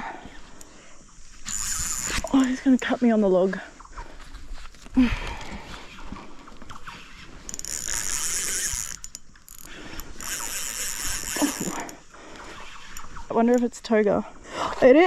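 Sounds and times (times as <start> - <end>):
fishing reel whirring and ticking: 0.0 - 3.0, 6.6 - 14.3.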